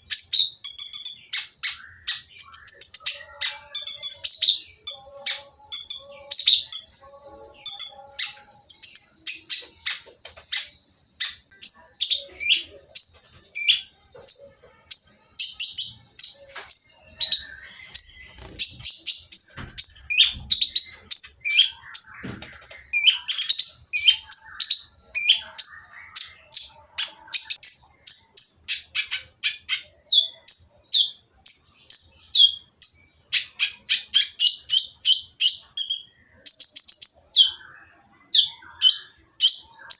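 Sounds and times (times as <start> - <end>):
sunbird harsh chirps: 0.0 - 6.9.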